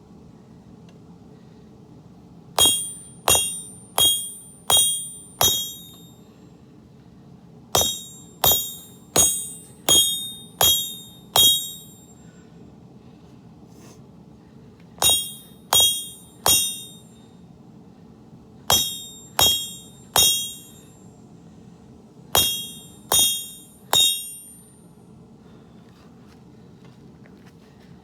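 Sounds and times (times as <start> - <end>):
hammer striking metal on anvil: 2.6 - 6.1, 7.8 - 12.2, 15.0 - 17.2, 18.7 - 21.0, 22.4 - 24.8.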